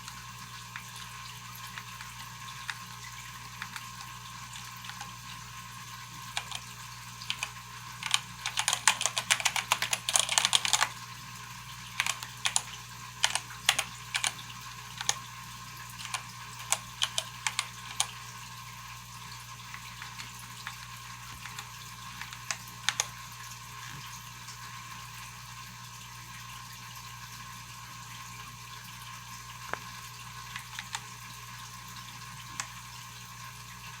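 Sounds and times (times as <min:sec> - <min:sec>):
faint steady hum: 0:00.0 - 0:34.0
mechanical keyboard keystrokes: 0:01.6 - 0:05.2, 0:06.3 - 0:11.0, 0:11.8 - 0:15.3, 0:16.0 - 0:18.2, 0:19.7 - 0:23.2, 0:30.5 - 0:31.1.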